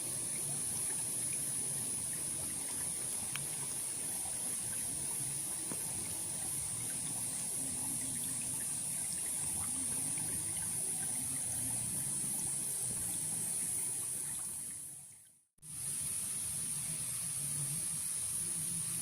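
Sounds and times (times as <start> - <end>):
water running: 0.0 - 15.2
insects buzzing: 0.0 - 19.0.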